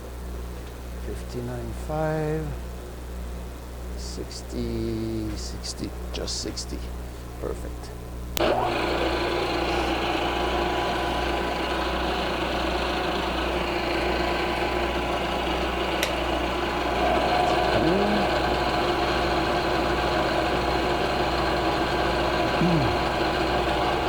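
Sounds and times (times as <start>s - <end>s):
milling machine cutting metal: 8.4s - 24.0s.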